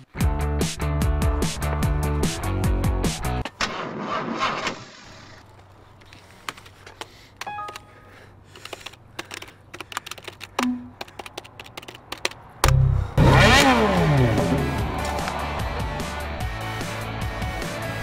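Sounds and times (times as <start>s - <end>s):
keyboard typing: 7.4s - 12.4s.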